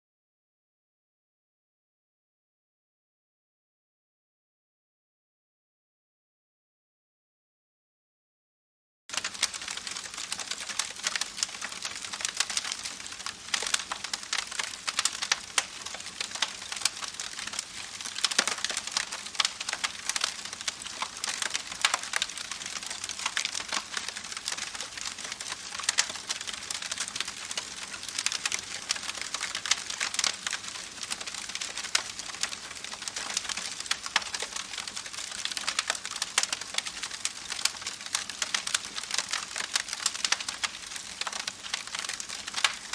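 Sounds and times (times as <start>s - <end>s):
campfire crackling: 9.1s - 42.9s.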